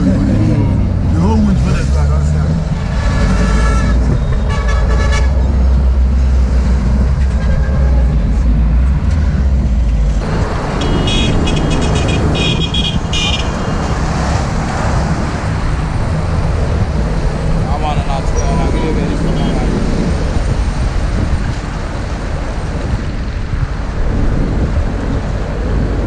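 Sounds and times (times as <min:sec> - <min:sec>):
bus engine rumble: 0:00.0 - 0:26.0
road traffic: 0:00.0 - 0:26.0
vehicle horns honking: 0:02.9 - 0:05.5, 0:10.6 - 0:13.8.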